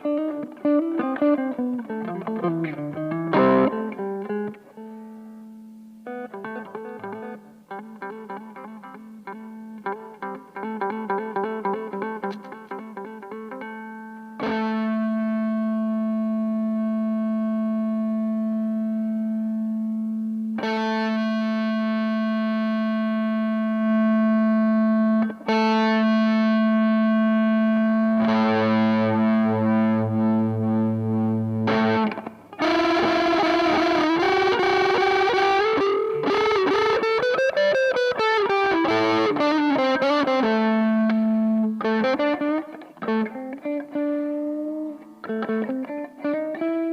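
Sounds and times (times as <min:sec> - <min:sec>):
distorted electric guitar: 0:00.0 - 0:46.9.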